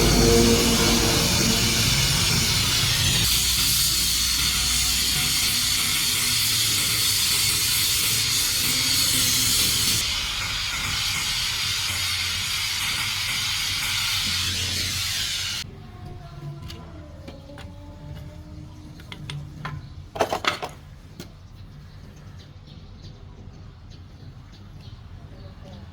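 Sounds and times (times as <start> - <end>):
loud steady hiss: 0.0 - 15.6.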